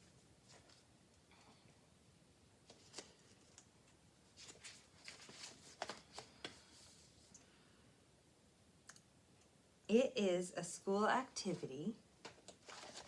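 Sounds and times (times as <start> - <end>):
book pages turning: 0.4 - 0.9, 2.6 - 7.1, 12.2 - 13.0.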